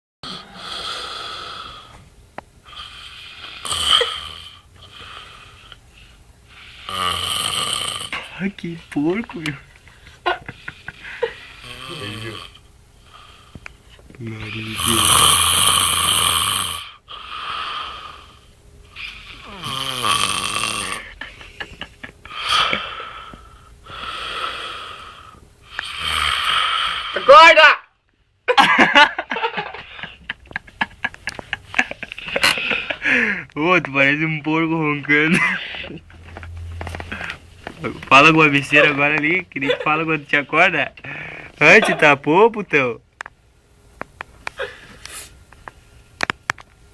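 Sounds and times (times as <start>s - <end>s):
man snoring: 0.2s - 2.0s, 2.6s - 5.7s, 6.5s - 8.3s, 10.6s - 13.5s, 14.4s - 21.2s, 22.3s - 27.3s.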